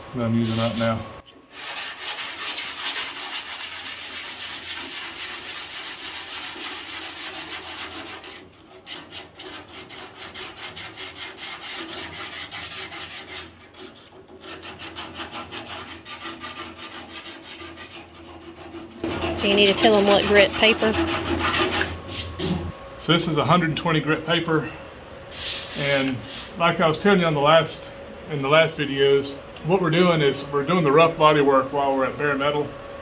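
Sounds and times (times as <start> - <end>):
sanding block on steel panel: 1.5 - 22.7.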